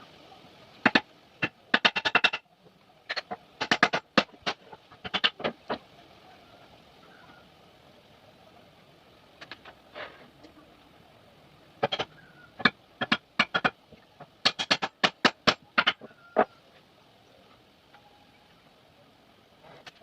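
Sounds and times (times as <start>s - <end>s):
hammer striking wood: 3.6s - 5.6s, 11.8s - 13.8s, 14.4s - 16.1s
faint scrapes: 9.9s - 10.6s.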